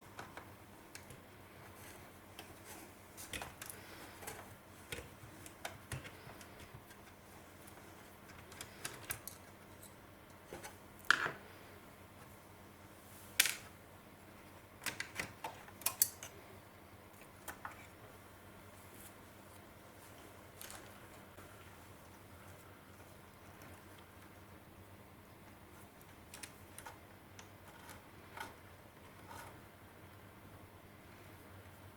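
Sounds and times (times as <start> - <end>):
clicks and taps of parts: 3.2 - 11.4, 14.8 - 16.4.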